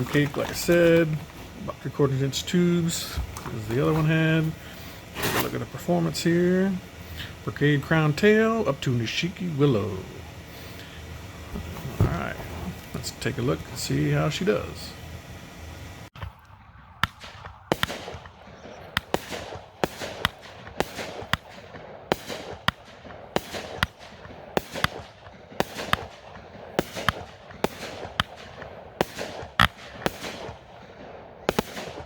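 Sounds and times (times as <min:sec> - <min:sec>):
fireworks bangs: 0:00.0 - 0:15.0, 0:16.1 - 0:32.0
fireworks hiss: 0:00.0 - 0:16.2.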